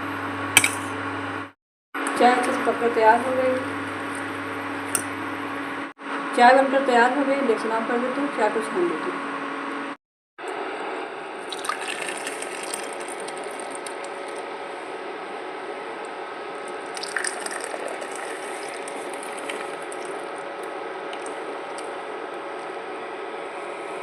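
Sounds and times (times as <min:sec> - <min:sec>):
tea pouring through strainer: 0:11.4 - 0:14.6, 0:16.6 - 0:22.0.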